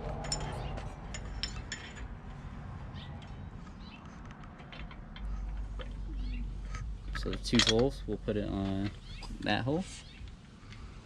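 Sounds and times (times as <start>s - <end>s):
metal parts clicking and clinking: 0.0s - 2.6s, 4.1s - 9.1s.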